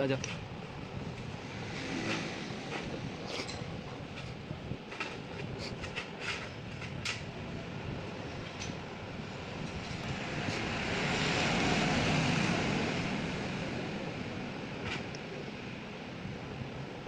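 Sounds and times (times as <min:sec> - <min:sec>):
vehicle passing by: 0:01.3 - 0:03.4, 0:10.1 - 0:14.6.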